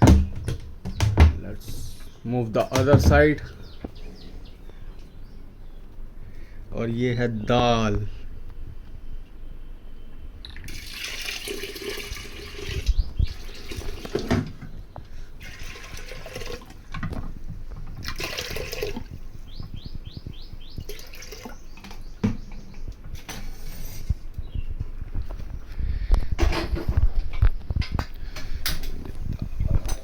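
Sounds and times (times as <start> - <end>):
tap water running into pot: 10.6 - 14.4, 15.4 - 16.9, 18.0 - 19.2, 20.9 - 21.6.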